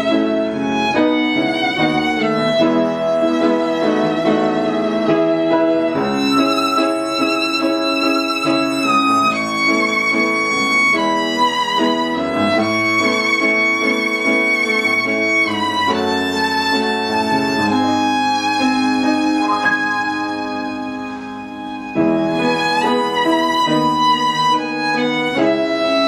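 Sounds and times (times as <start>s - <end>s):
lower accompaniment: 0.0s - 10.2s, 16.6s - 23.3s
slow violin melody: 0.0s - 26.0s.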